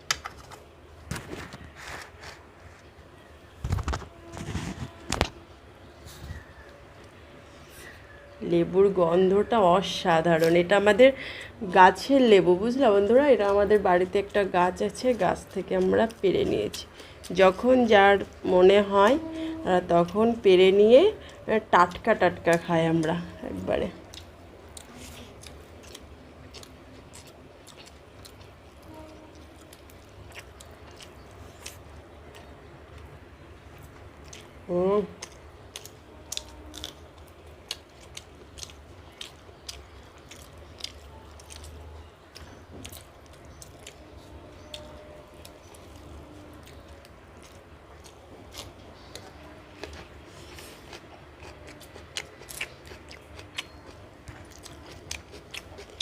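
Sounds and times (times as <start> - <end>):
soft chewing: 12.7 - 56.0.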